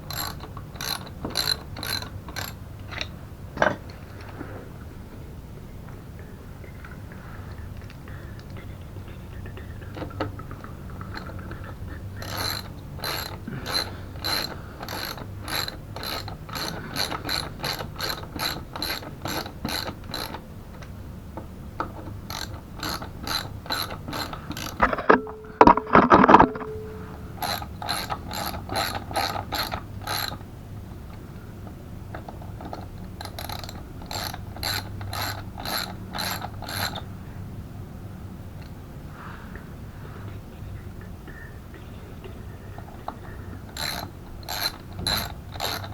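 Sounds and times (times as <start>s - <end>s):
ratchet wrench clicking: 0.0s - 3.1s, 12.1s - 20.9s, 21.8s - 24.8s, 27.4s - 30.4s, 32.1s - 37.1s, 43.7s - 45.9s
metal clank with ring: 25.0s - 27.2s.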